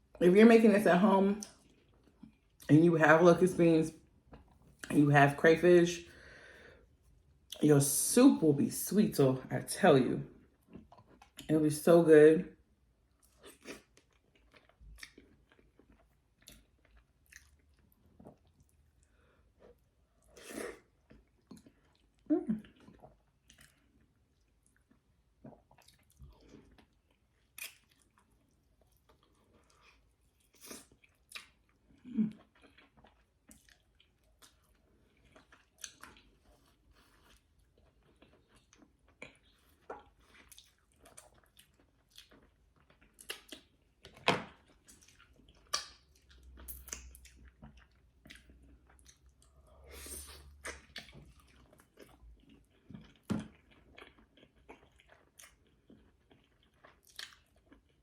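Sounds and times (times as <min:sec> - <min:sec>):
chewing and mouth smacks: 0:10.5 - 0:11.5, 0:13.1 - 0:58.0.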